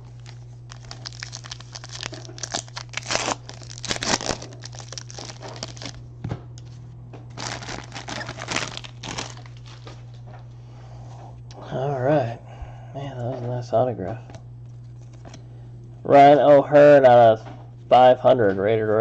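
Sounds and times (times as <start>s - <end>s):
foil wrappers crinkling and tearing: 0.0s - 6.0s, 7.3s - 10.2s
steady low hum: 0.0s - 19.0s.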